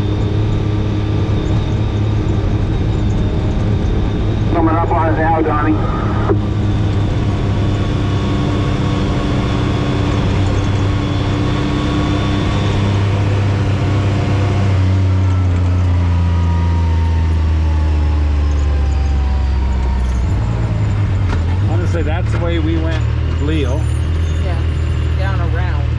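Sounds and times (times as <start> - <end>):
faint whine: 0.0 - 13.3
vehicle engine running: 0.0 - 25.9.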